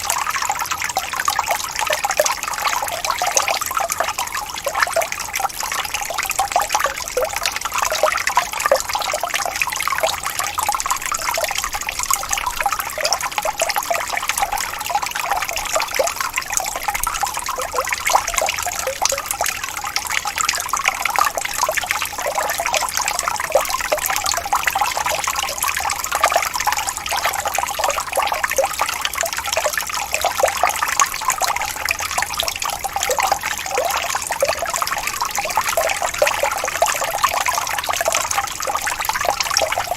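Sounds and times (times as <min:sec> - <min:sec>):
small waterfall splashing: 0:10.2 - 0:39.9.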